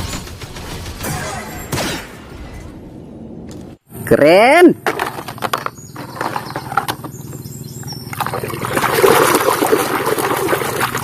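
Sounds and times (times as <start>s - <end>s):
water splashing: 7.9s - 11.0s.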